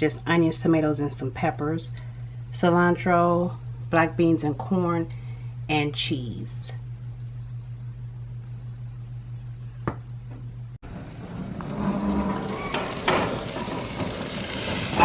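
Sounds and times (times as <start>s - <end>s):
low steady hum: 0.0s - 15.0s
meat sizzling on a grill: 10.9s - 15.0s.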